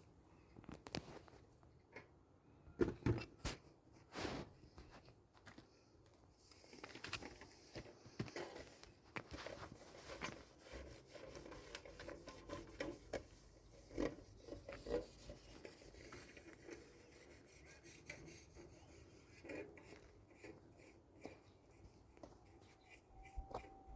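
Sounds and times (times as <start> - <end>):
faint rubbing and scraping: 6.4 - 23.9.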